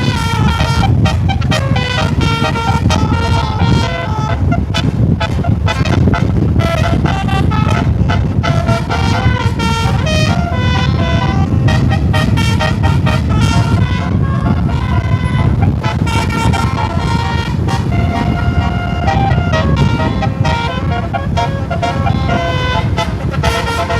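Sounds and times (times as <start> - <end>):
bus horn playing a tune: 0.0 - 23.9
low rumble of moving bus: 0.0 - 23.9.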